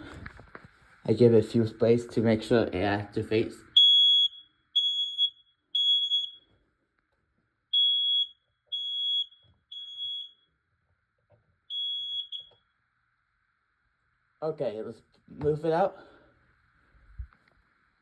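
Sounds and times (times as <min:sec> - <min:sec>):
smoke alarm beeping: 0:03.7 - 0:06.6, 0:07.7 - 0:10.6, 0:11.7 - 0:12.8.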